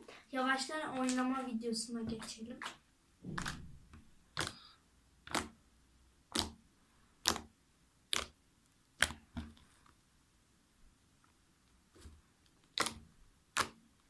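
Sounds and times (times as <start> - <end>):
slime popping and clicking: 2.6 - 5.6, 6.3 - 6.6, 7.2 - 7.5, 8.1 - 8.4, 9.0 - 9.5, 12.7 - 13.8.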